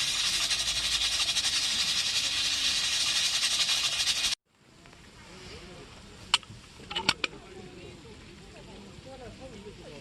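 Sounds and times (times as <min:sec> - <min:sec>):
pot of rice hissing on stove: 0:00.0 - 0:04.4.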